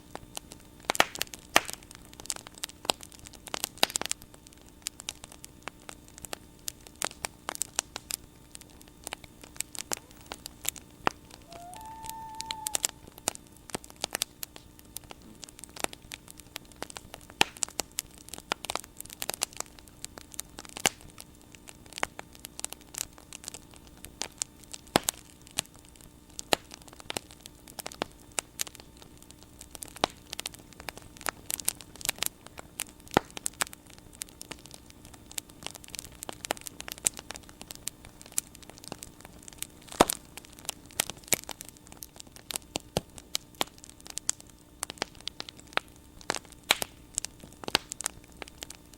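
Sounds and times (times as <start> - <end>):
bonfire crackling and popping: 0.0 - 48.9
faint steady hum: 0.0 - 48.9.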